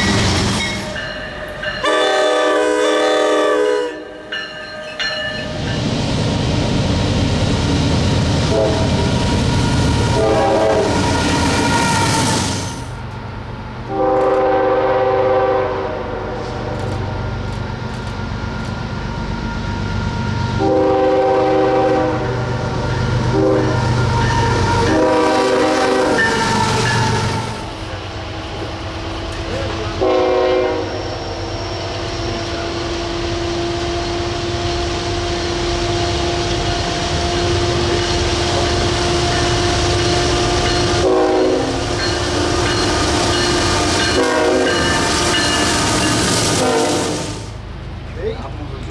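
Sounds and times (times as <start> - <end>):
train rumble: 0.0 - 48.9
locomotive air horn blasts: 1.8 - 4.3, 8.4 - 12.1, 13.9 - 17.2, 20.4 - 27.8, 29.8 - 31.1, 32.9 - 44.9, 46.5 - 47.6.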